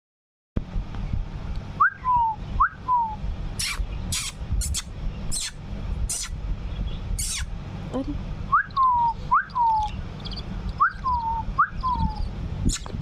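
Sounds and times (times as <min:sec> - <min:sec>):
low rumble: 0:00.6 - 0:13.0
budgerigars chirping: 0:03.6 - 0:07.5, 0:08.6 - 0:13.0.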